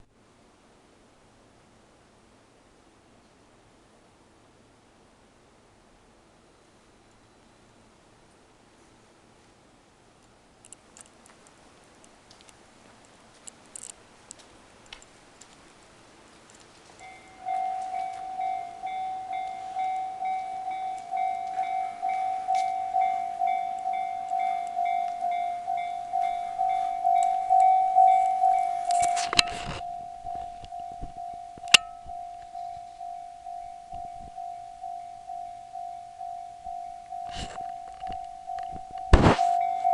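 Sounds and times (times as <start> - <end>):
faint ticks: 10.2 - 15.8
electronic crossing warning bell: 17.0 - 39.9.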